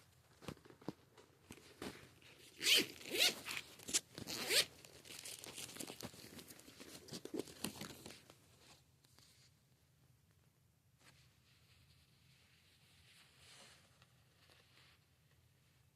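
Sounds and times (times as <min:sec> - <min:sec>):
plastic sleeves rustling: 0:00.0 - 0:09.6.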